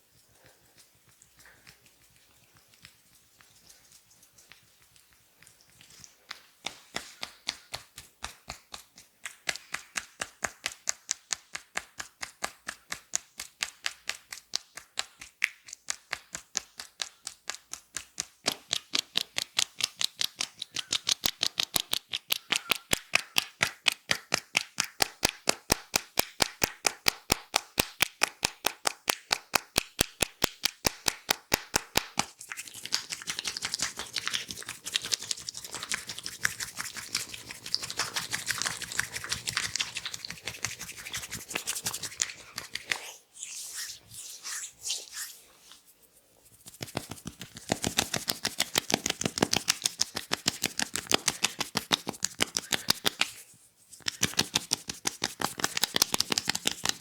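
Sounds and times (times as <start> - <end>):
soft rustling rub: 0.0 - 9.1, 32.2 - 57.0
hands slapping in massage: 5.4 - 45.4, 46.6 - 57.0.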